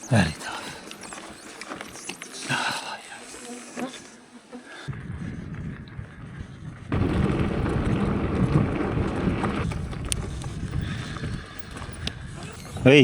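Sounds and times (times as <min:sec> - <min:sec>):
wind buffeting microphone: 0:04.9 - 0:13.0.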